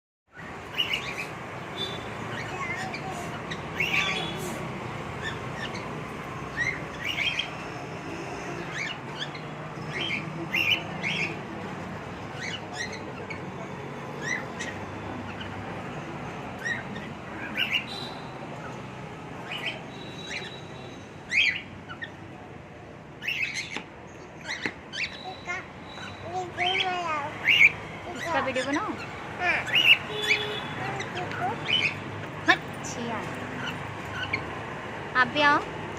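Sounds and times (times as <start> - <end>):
birds chirping: 0.3 - 35.9.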